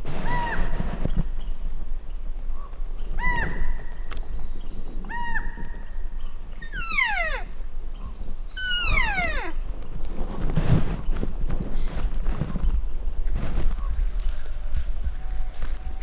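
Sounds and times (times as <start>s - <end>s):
elk chirps: 6.5s - 9.7s
elk mew sliding down: 6.6s - 7.6s, 8.6s - 9.6s.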